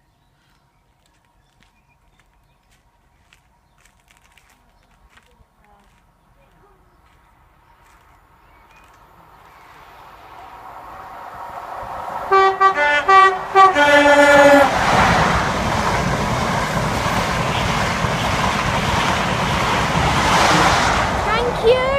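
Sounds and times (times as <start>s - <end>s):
train passing with rail noise: 5.8s - 21.9s
two-tone train horn blasts: 12.3s - 14.8s.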